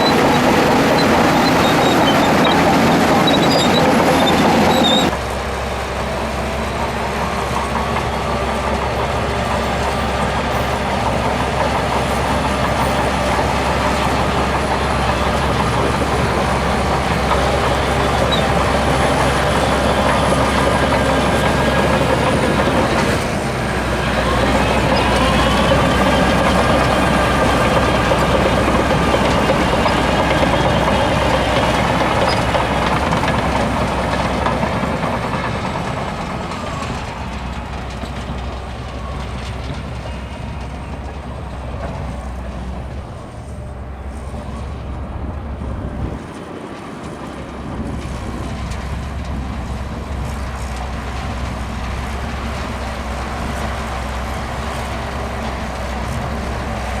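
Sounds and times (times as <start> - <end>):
high machine tone: 0.0 - 5.1
bulldozer diesel engine and tracks: 0.0 - 57.0.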